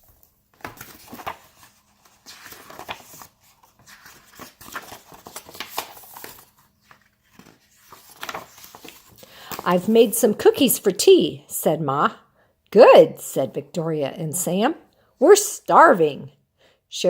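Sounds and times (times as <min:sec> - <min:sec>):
book pages turning: 0:00.0 - 0:10.1.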